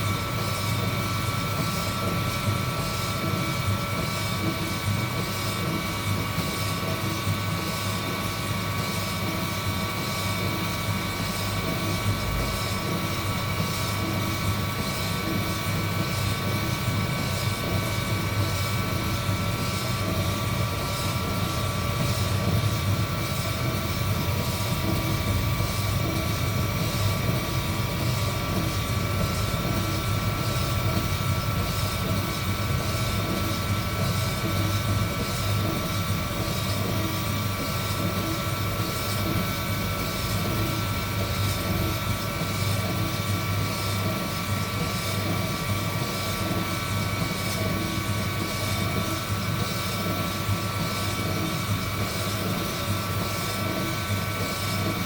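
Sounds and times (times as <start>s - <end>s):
heat gun blowing with whine: 10.4s - 43.1s.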